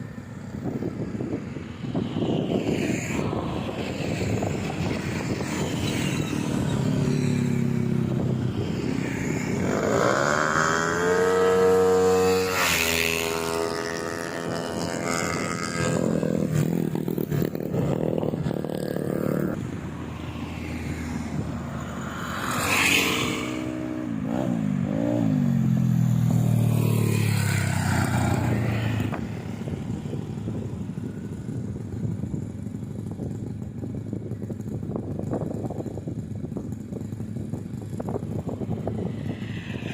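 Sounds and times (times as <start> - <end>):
scooter engine revving: 4.4 - 19.6.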